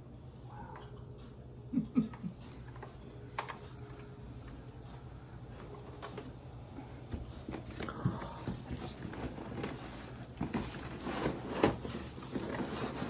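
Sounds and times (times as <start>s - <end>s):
plastic wrapping rustling: 8.6s - 13.0s.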